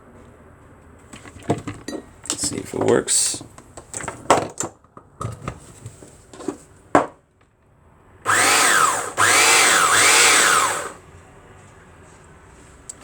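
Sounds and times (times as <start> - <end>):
coffee grinder motor whine: 8.3 - 11.0.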